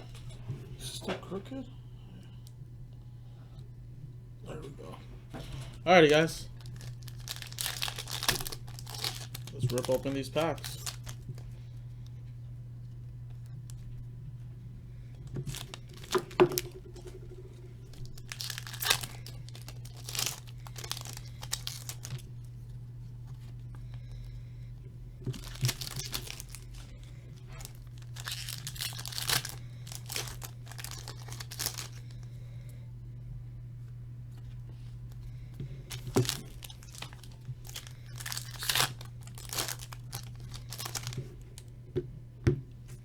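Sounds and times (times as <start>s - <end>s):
steady low hum: 0.0s - 43.0s
wrapper tearing and crinkling: 6.0s - 11.4s, 15.4s - 16.8s, 17.8s - 22.3s, 25.3s - 32.2s, 35.9s - 41.4s.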